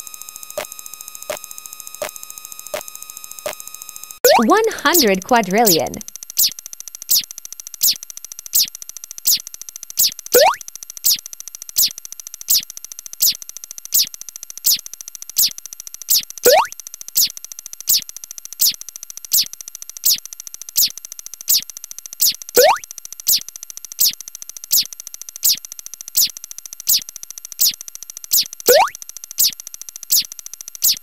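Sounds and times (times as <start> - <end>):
short falling electronic chirps: 10.4 - 10.6, 16.5 - 16.7, 22.6 - 23.4, 28.7 - 29.5
faint steady high tone: 16.5 - 16.7, 22.6 - 22.8, 28.7 - 29.0.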